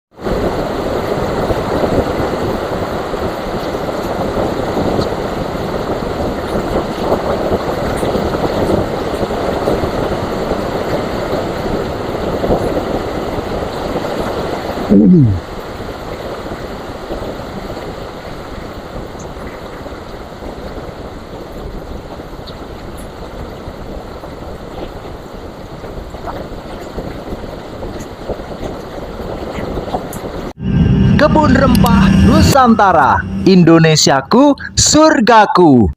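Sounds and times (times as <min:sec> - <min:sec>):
rain falling on trees: 0:00.2 - 0:14.9, 0:15.5 - 0:30.5
loud falling tone: 0:30.6 - 0:35.2.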